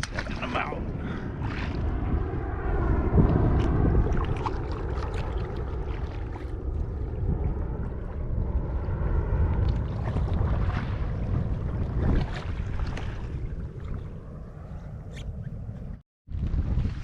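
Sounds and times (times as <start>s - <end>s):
small splashes and ticks: 0.0s - 0.5s, 3.2s - 8.2s, 9.4s - 14.7s
water lapping against hull: 0.0s - 2.0s, 3.4s - 15.3s
wind buffeting microphone: 0.0s - 17.0s.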